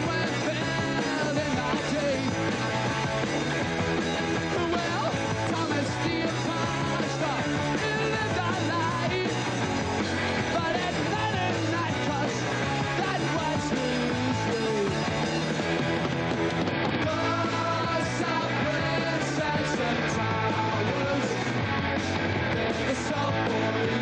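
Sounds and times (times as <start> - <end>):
person singing: 0.0 - 2.5, 4.5 - 15.2, 17.0 - 21.6, 22.5 - 24.0
rock band playing: 0.0 - 24.0.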